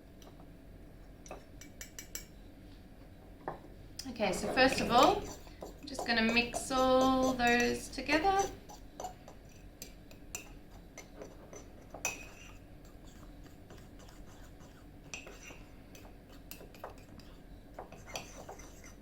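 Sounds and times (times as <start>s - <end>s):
fork clinking and scraping in mug: 4.4s - 19.0s.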